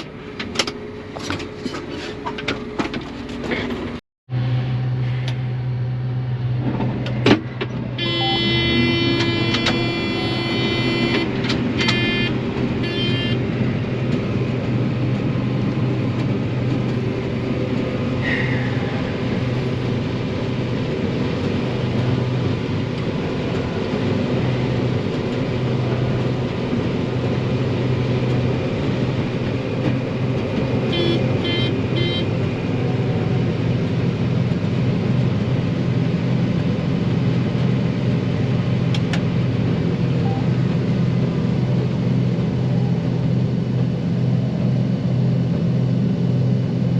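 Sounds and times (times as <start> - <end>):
combine harvester engine hum: 0.0 - 46.9
short electronic beeps: 8.0 - 13.4, 30.9 - 32.3.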